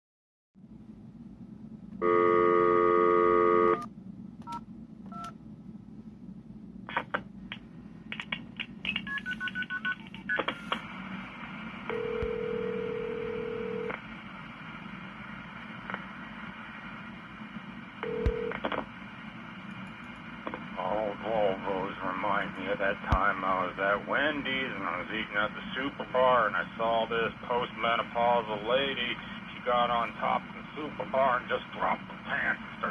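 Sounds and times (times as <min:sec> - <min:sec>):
telephone ringback tone: 0:02.0 - 0:03.8, 0:11.9 - 0:13.9, 0:18.0 - 0:18.5
steady telephone tones: 0:02.0 - 0:03.9, 0:11.9 - 0:13.9, 0:18.0 - 0:18.8
keypad dialing tones: 0:08.9 - 0:10.7.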